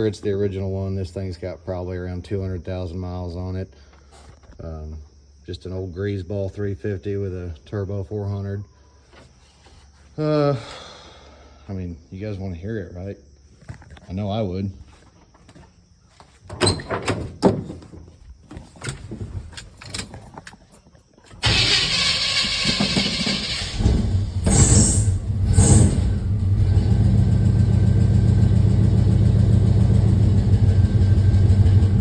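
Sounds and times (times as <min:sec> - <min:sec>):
starter motor cranking: 0:21.4 - 0:25.8
engine revving and idling: 0:21.4 - 0:32.0.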